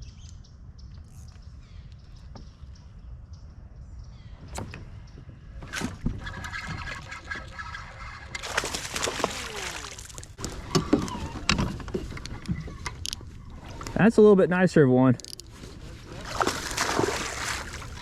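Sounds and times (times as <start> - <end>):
water splashing and sloshing: 4.4 - 14.4, 15.0 - 18.0.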